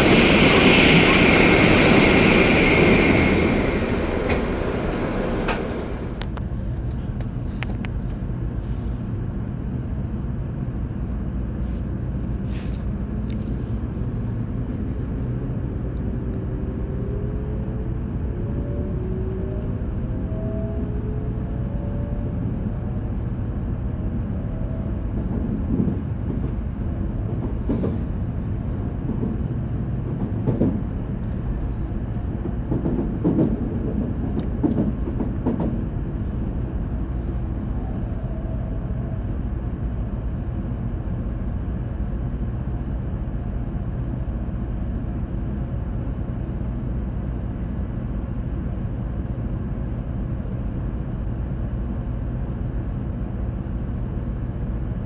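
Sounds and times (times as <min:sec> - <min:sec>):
train rumbling at speed: 0:00.0 - 0:55.0.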